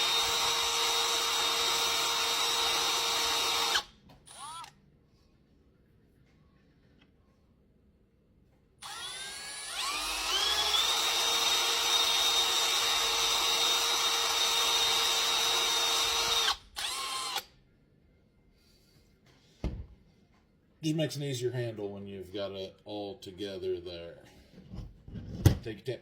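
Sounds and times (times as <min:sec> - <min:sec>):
power drill running: 0:00.0 - 0:04.7, 0:08.8 - 0:17.5.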